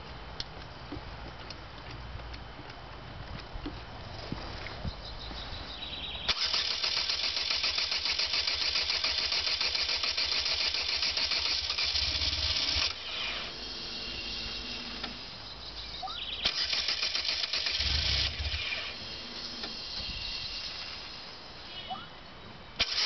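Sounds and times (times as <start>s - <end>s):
starter motor cranking: 6.3s - 15.4s, 16.4s - 21.3s, 22.8s - 23.0s
faint steady hum: 11.6s - 16.6s, 17.7s - 22.8s.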